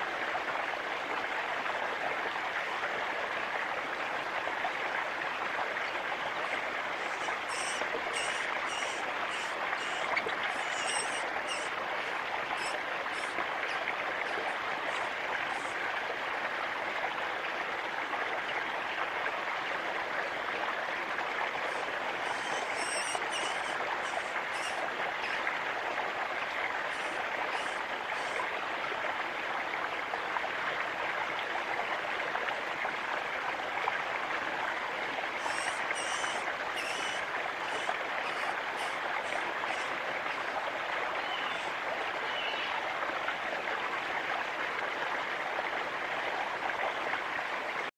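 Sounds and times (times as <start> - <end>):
rushing water: 0.0 - 47.9
small bird chirping: 7.1 - 11.7, 22.2 - 25.4, 35.4 - 39.9.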